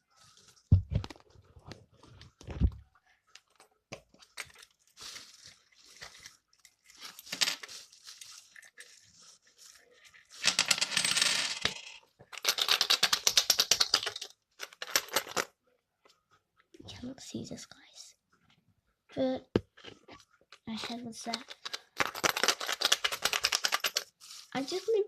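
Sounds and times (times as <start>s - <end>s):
coins rattling in shaken capsule: 10.3s - 15.5s, 21.2s - 24.9s
coins clinking in plastic capsule: 10.4s - 15.5s, 20.8s - 24.1s.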